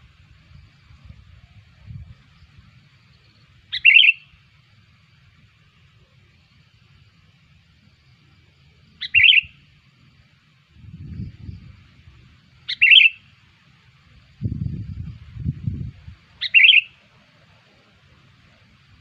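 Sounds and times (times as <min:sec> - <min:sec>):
bird chirping calls: 0:03.2 - 0:04.4, 0:09.0 - 0:09.7, 0:12.6 - 0:13.3, 0:16.4 - 0:17.0.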